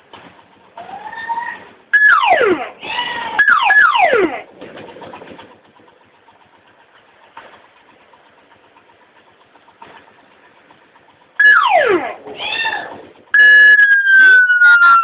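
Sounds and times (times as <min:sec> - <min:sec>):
electronic motorcycle siren: 0:00.8 - 0:04.5, 0:11.4 - 0:15.0.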